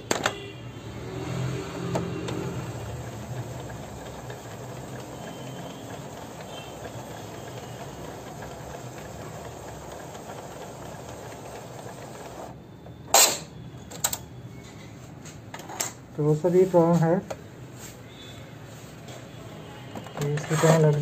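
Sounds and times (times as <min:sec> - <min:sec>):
printer click: 0:00.0 - 0:00.4
printer mechanism running: 0:00.0 - 0:14.3, 0:19.9 - 0:21.0.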